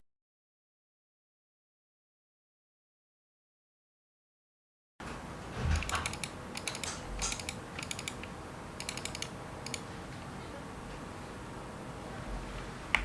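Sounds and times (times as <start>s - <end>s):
mechanical keyboard typing: 5.7s - 9.9s.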